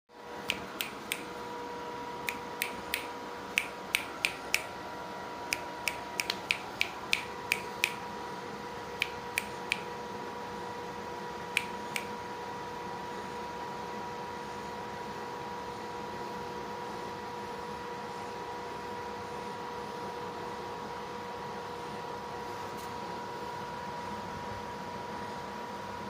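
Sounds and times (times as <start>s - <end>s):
electrical hum: 0.1s - 26.0s
sharp snapping clicks: 0.5s - 1.3s, 2.2s - 4.7s, 5.5s - 8.0s, 9.0s - 9.9s, 11.5s - 12.1s.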